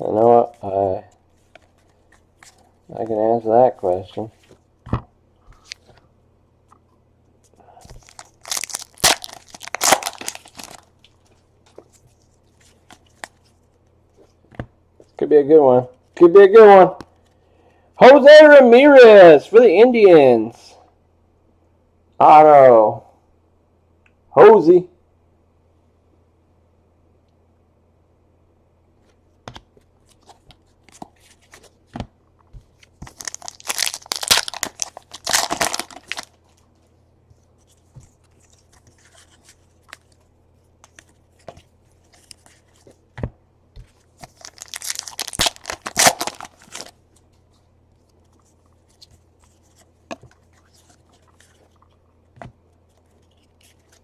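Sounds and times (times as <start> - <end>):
foil packs tearing and crinkling: 7.9 - 10.8, 33.0 - 36.4, 44.3 - 46.9.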